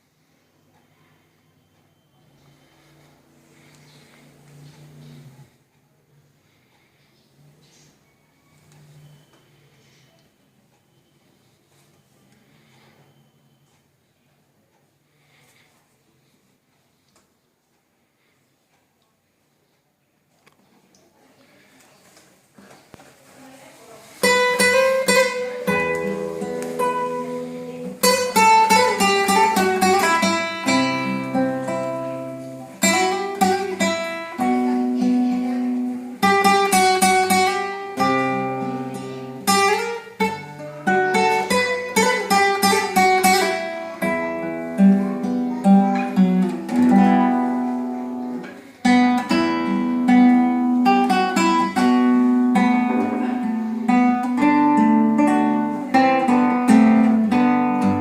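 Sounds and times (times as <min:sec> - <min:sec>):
classical guitar playing: 0:24.2 - 0:58.0.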